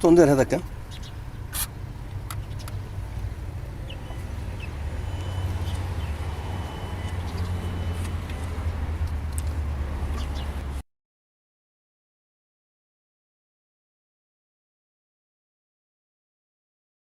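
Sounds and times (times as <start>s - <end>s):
diesel engine idling: 0.0s - 10.8s.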